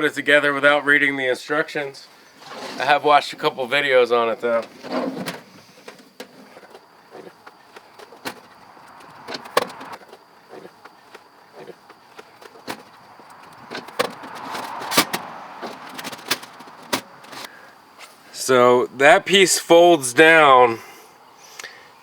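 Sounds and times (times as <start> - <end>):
sheet metal clicking and clanking: 4.5 - 17.5.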